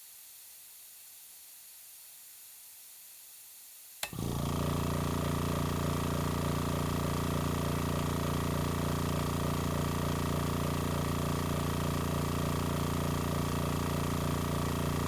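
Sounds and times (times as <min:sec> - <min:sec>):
faint air hiss: 0:00.0 - 0:04.2
compressor motor hum: 0:04.0 - 0:15.0.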